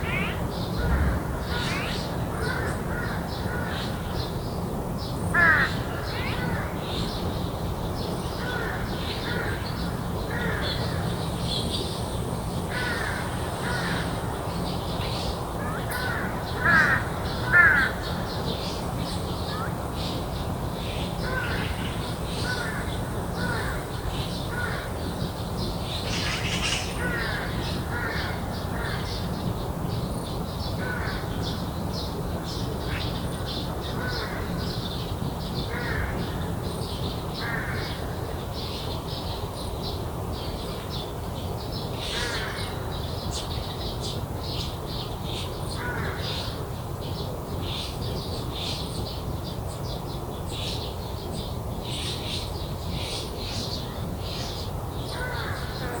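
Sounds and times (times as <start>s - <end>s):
crows cawing: 0.0s - 3.9s, 5.3s - 6.7s, 8.4s - 11.0s, 12.7s - 14.3s, 15.6s - 18.3s, 21.2s - 25.2s, 26.0s - 29.2s, 30.8s - 31.3s, 33.9s - 34.7s, 35.7s - 36.4s, 37.4s - 38.1s, 42.0s - 42.8s, 45.7s - 46.6s, 55.1s - 56.0s.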